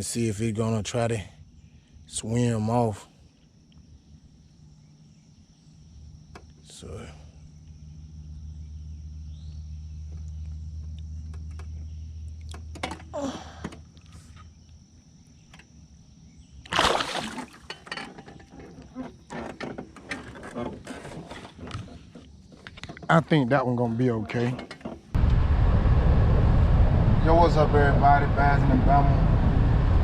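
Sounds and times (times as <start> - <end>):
steady low hum: 0.0 - 17.8
loud splash: 16.7 - 17.6
water splashing: 16.7 - 17.7.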